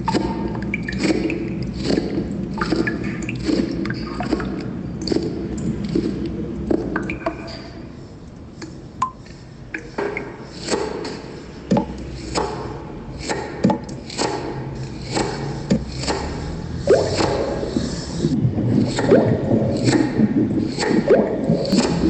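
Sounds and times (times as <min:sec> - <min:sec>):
irregular knocks and clicks: 0:11.7 - 0:12.5, 0:13.6 - 0:14.4
low background rumble: 0:15.6 - 0:22.0.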